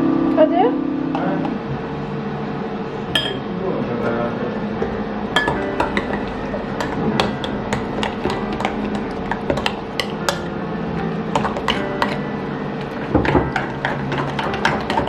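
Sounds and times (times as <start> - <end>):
utensils clinking against dishes: 3.2 - 3.5, 5.4 - 15.0.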